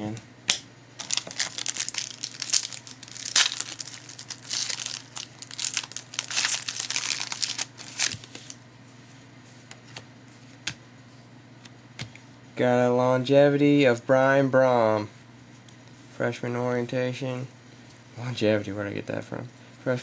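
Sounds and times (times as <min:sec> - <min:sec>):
foil wrapper crinkling and tearing: 0:01.0 - 0:08.6.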